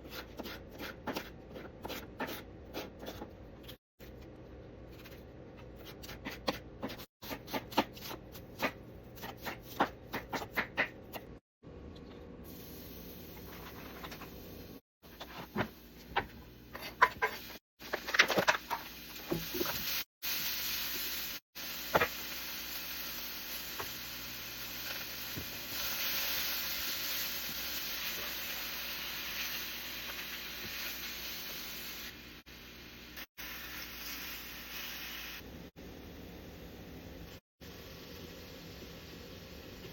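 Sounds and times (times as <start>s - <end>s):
food frying sizzle: 16.1s - 39.9s.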